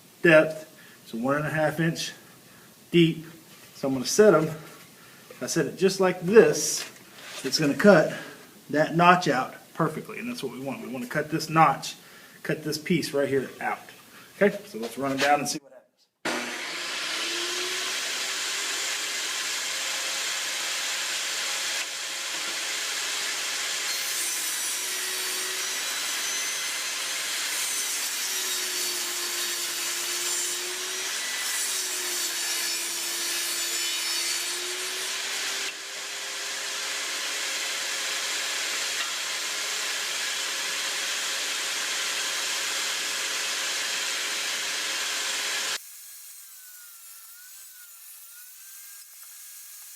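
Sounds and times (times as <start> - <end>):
table saw cutting wood: 6.7 - 7.9, 16.2 - 49.9.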